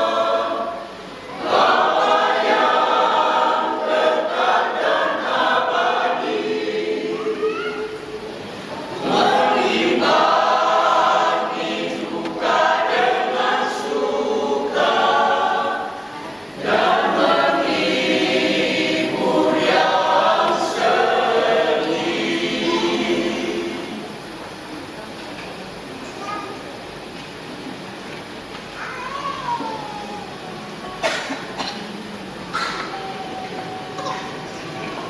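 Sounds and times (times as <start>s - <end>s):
church choir singing: 0.0s - 24.4s.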